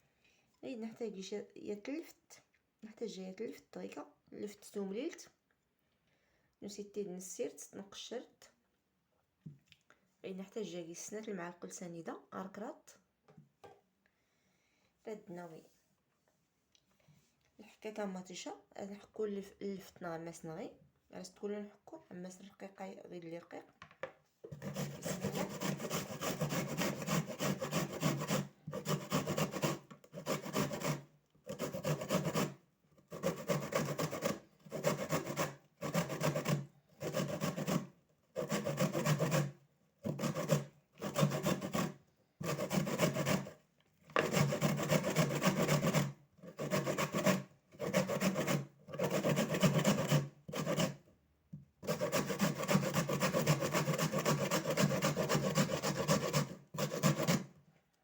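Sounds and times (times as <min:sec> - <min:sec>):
turnip grated on grater: 0:24.5 - 0:39.5, 0:44.1 - 0:51.0, 0:51.8 - 0:57.4.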